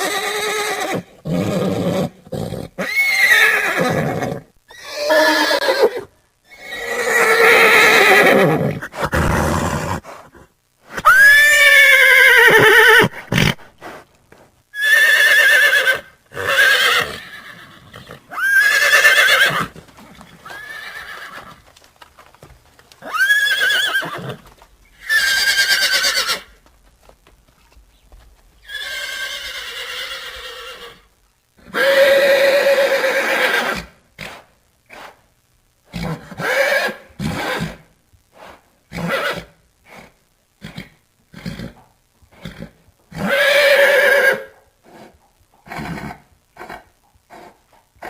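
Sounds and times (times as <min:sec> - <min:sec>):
horses neighing: 0:00.0 - 0:10.0, 0:11.0 - 0:13.7, 0:14.8 - 0:21.8, 0:23.0 - 0:26.6, 0:28.6 - 0:31.1.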